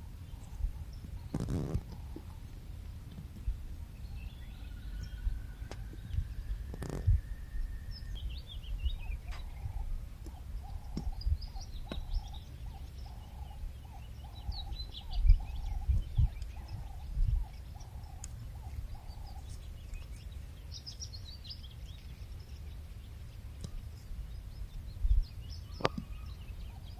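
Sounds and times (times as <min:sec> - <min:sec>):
steady low rumble: 0:00.0 - 0:26.9
bird repeated call notes: 0:03.8 - 0:20.3, 0:25.5 - 0:26.9.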